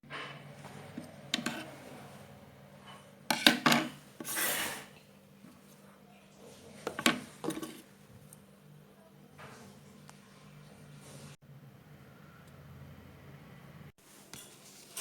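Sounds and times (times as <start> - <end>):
rustling scrape: 0.1 - 3.1, 14.0 - 15.0.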